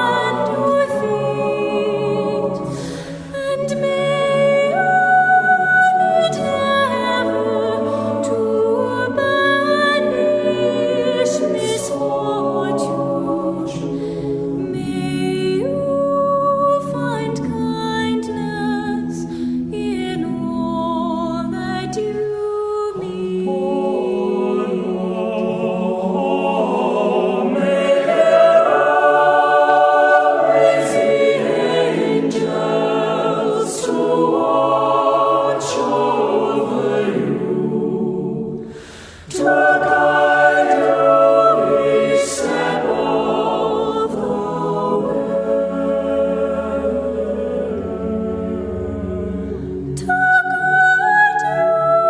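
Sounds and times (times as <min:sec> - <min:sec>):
choir singing a cappella: 0:00.0 - 0:52.0.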